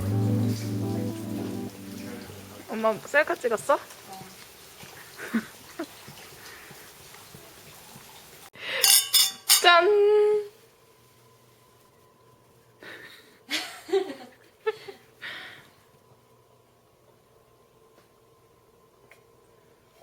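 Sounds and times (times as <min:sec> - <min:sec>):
cups clinking: 0:08.8 - 0:09.6.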